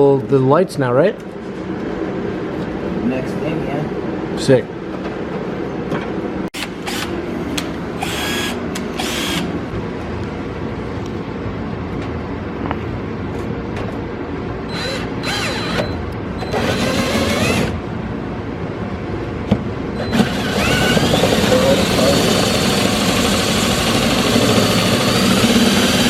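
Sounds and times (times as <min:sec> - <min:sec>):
power drill whining: 0:06.6 - 0:07.1, 0:08.0 - 0:09.5, 0:14.7 - 0:17.8, 0:20.0 - 0:26.0.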